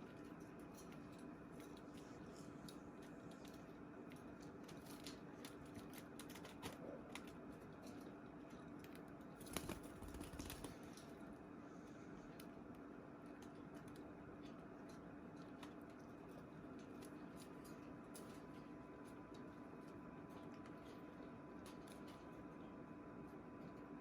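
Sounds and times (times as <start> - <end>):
steady low hum: 0.0 - 24.0
birds scratching in cage: 9.3 - 11.0.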